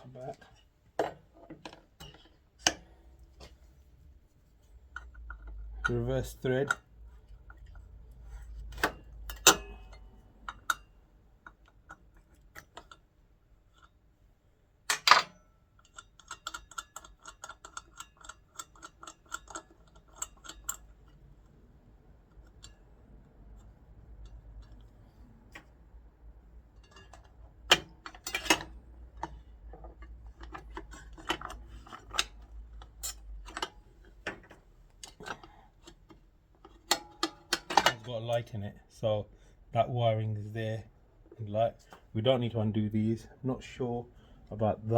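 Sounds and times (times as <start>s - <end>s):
tools clicking and clinking: 14.9s - 21.3s, 26.8s - 38.2s.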